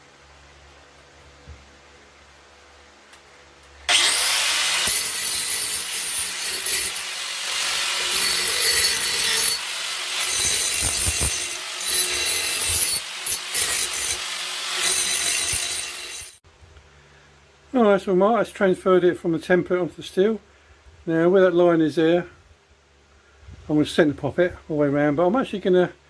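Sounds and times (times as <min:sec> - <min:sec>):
power grinder grinding steel pipe: 0:03.9 - 0:16.4.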